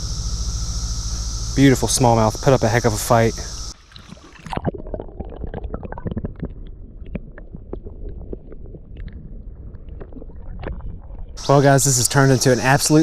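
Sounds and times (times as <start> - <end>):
underwater creek water stirring: 1.1 - 13.0
small clicks and gurgles: 3.8 - 11.4.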